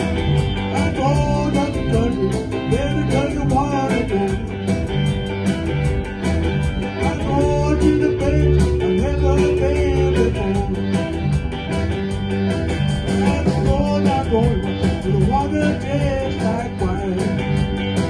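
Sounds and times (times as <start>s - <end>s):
bass guitar: 0.0s - 18.0s
drums with steady beat: 0.0s - 18.0s
electric guitar: 0.0s - 18.0s.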